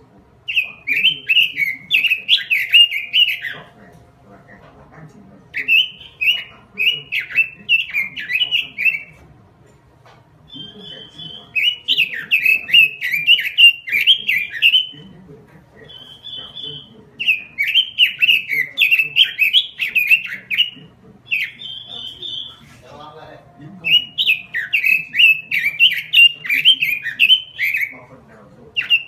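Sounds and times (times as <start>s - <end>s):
bird singing warbled phrases: 0.0s - 29.0s.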